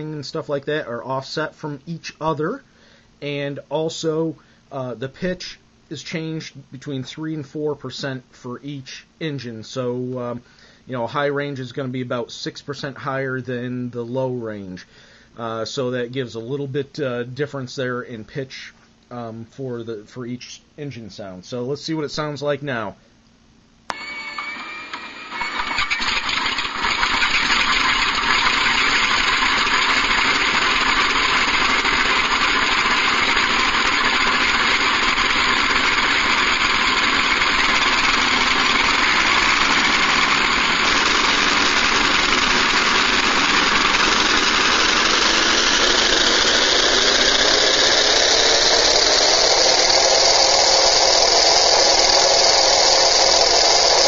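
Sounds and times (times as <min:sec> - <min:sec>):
starter whine: 0:23.8 - 0:54.0
radial aircraft engines idling: 0:25.5 - 0:30.2.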